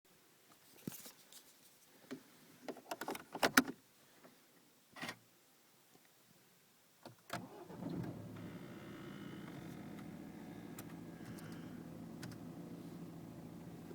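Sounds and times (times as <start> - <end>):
diesel engine starting and idling: 7.4 - 13.9.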